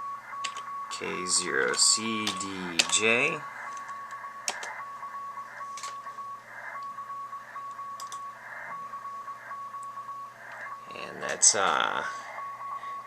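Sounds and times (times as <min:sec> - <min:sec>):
morse code tone beeping: 0:00.0 - 0:13.0
radio hiss: 0:00.9 - 0:07.6, 0:08.3 - 0:09.7, 0:10.3 - 0:13.0
sharp clicks: 0:03.7 - 0:04.8, 0:07.7 - 0:08.2.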